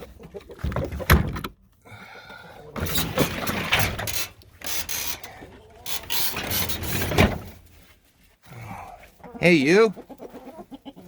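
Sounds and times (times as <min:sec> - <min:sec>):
wooden door creaking: 0:02.8 - 0:05.2
wood rubbing and scraping: 0:02.8 - 0:08.2.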